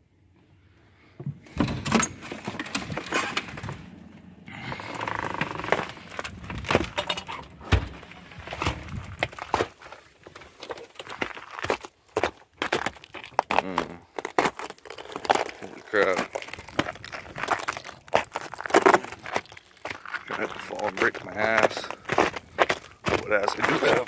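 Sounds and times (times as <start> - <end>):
footsteps on icy snow: 7.9 - 24.0.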